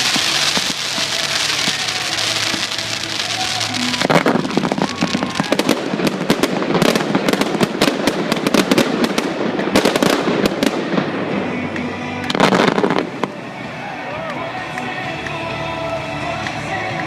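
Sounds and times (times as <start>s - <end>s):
fireworks crackling and banging: 0.0s - 17.0s.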